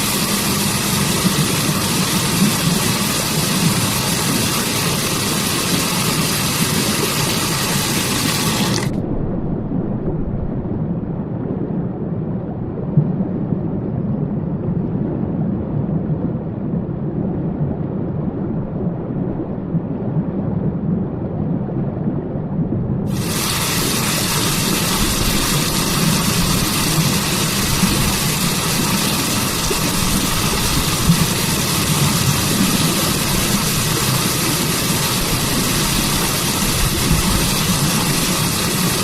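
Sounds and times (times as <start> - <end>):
waterfall rushing: 0.0 - 9.0, 23.1 - 39.0.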